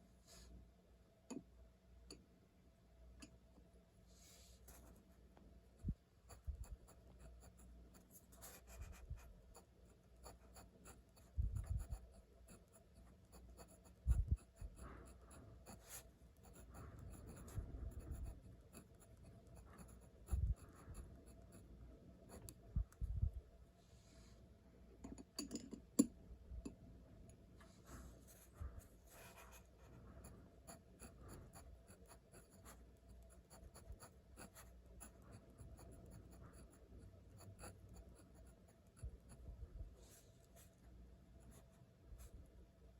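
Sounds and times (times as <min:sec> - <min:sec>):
pen scratching on paper: 0:06.3 - 0:21.6, 0:28.3 - 0:39.5.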